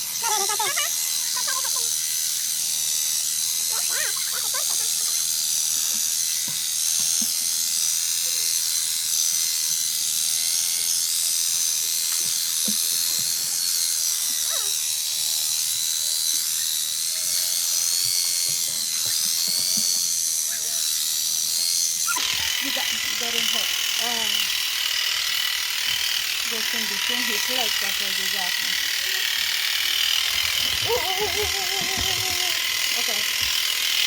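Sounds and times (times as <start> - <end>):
electric sheep shears whining: 0.0 - 34.0.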